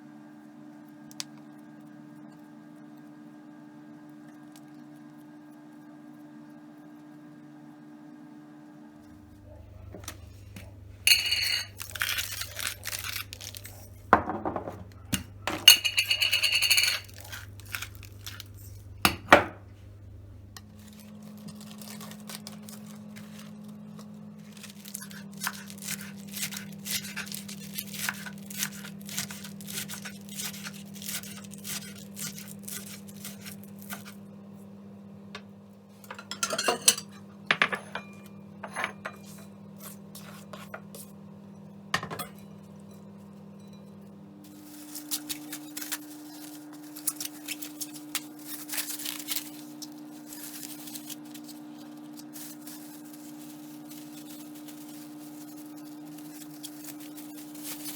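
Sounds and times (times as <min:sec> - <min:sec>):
dishes and utensils clinking: 0:09.9 - 0:12.0, 0:14.2 - 0:17.4, 0:36.0 - 0:39.5, 0:42.0 - 0:44.0.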